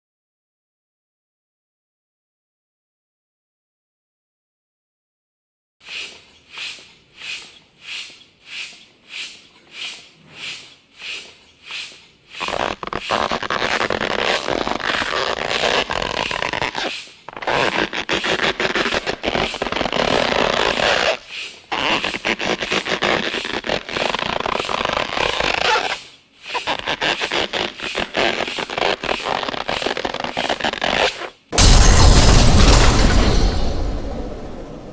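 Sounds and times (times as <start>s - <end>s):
air pump puffing: 5.8s - 31.1s
crackling fart sound effects: 12.4s - 31.4s.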